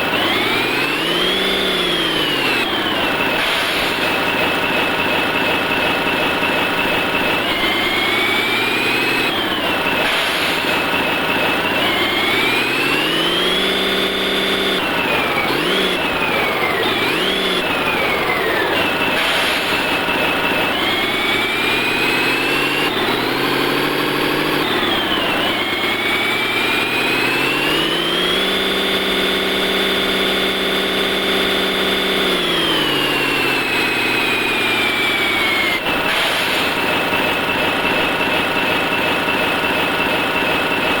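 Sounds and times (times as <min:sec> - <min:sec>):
simulated diesel truck engine: 0:00.0 - 0:41.0.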